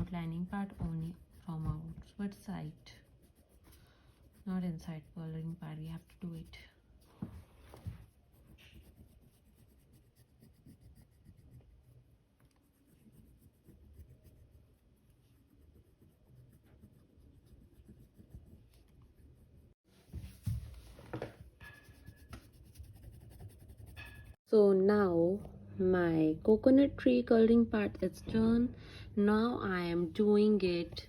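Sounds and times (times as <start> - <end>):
pencil scratching on paper: 0.0 - 19.8, 21.6 - 24.4.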